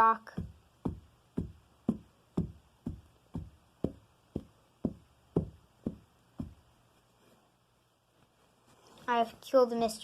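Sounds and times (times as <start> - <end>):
stick beating down in knocks: 0.3 - 6.7.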